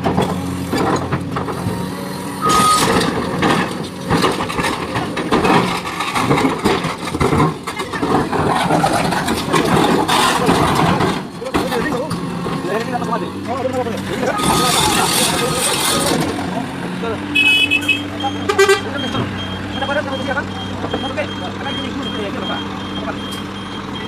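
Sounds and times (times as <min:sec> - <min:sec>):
diesel engine under load: 0:00.0 - 0:24.0
short high beep: 0:02.4 - 0:02.9
rocks scraping and clattering: 0:02.5 - 0:16.6.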